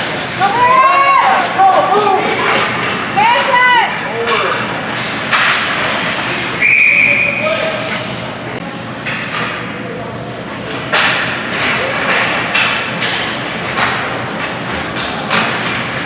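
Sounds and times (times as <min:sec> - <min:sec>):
murmur of crowd voices: 0:00.0 - 0:16.0
hockey sticks and puck knocking: 0:05.3 - 0:05.9, 0:10.9 - 0:16.0.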